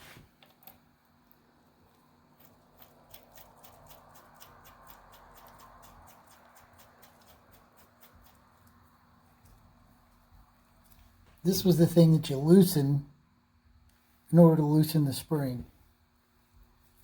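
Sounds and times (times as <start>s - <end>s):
small hardware clicking and rattling: 2.3s - 8.8s.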